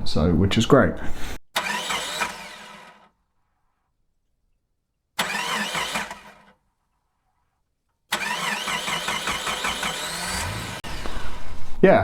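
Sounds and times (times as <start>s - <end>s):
car engine cranking: 1.6s - 3.1s, 5.2s - 6.6s, 8.1s - 11.6s.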